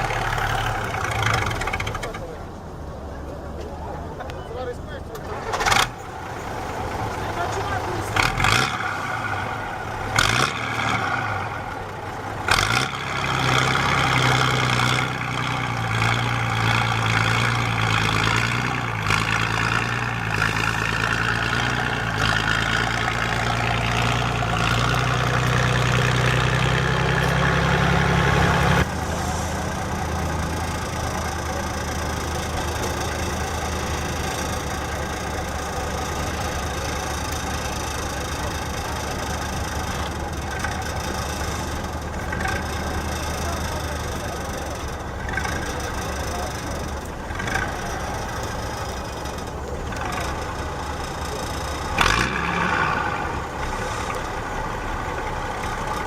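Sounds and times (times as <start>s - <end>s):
diesel engine idling: 0.0s - 56.0s
diesel engine revving: 0.0s - 56.0s.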